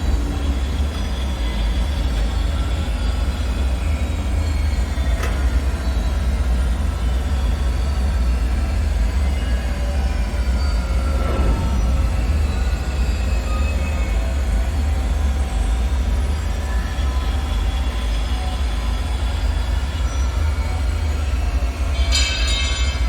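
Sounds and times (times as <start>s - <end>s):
deep rumble: 10.8s - 15.6s.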